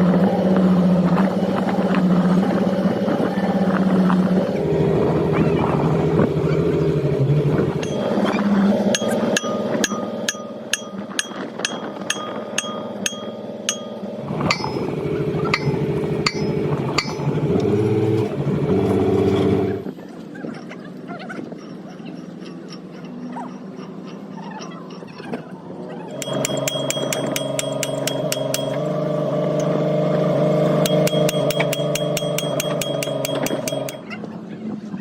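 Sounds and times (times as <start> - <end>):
machinery humming: 0.0 - 20.0, 25.6 - 34.1
ringing metallic clinks: 7.8 - 17.4, 26.1 - 29.8, 30.8 - 34.2.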